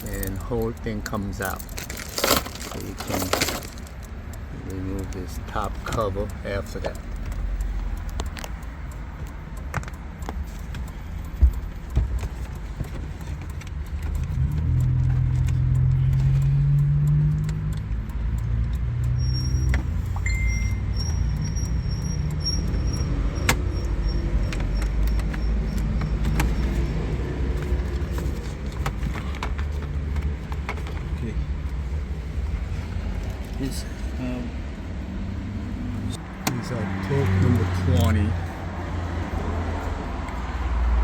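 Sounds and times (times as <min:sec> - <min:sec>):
plastic parts clicking and rattling: 0:00.0 - 0:04.2, 0:24.3 - 0:31.8.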